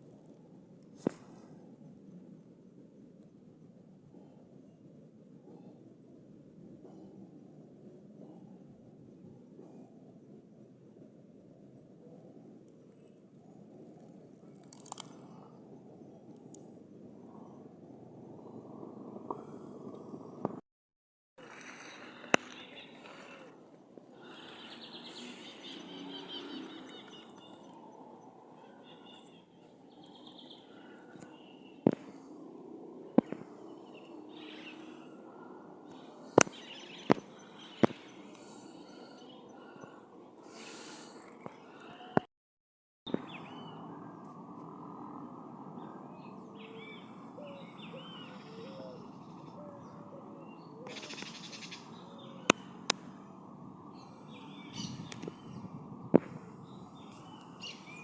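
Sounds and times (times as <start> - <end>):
small birds chirping: 21.4 - 42.3, 43.1 - 58.0
higher bird chirps: 21.8 - 31.8, 50.6 - 52.9.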